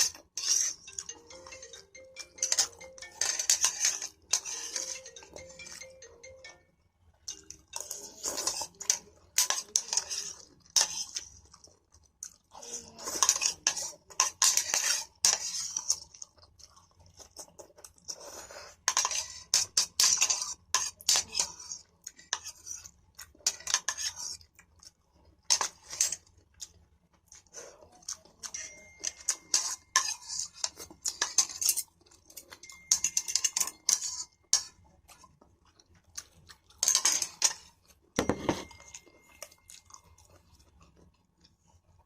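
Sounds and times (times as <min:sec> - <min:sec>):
cutlery clinking on a plate: 0:28.5 - 0:34.8, 0:36.8 - 0:39.6.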